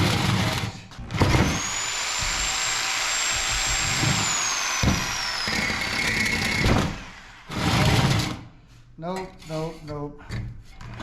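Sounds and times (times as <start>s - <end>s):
power cutter disc cutting metal: 0.0s - 8.4s.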